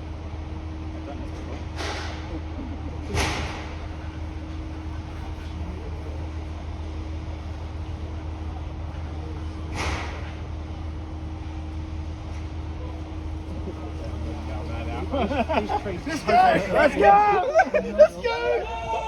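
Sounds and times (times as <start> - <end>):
engine humming: 13.1 - 19.0.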